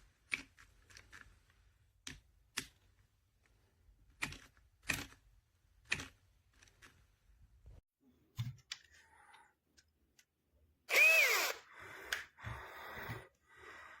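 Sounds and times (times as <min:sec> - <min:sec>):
cordless drill motor whine: 0:10.9 - 0:11.6.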